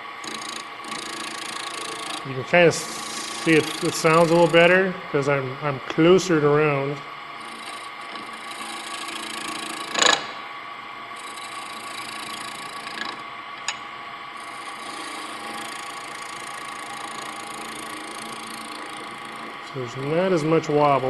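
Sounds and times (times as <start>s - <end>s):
gouge scraping spinning wood: 0.0s - 4.7s, 7.4s - 10.0s, 11.2s - 13.3s, 14.4s - 20.8s
wood lathe motor hum: 0.0s - 5.3s, 7.3s - 10.4s, 11.0s - 21.0s.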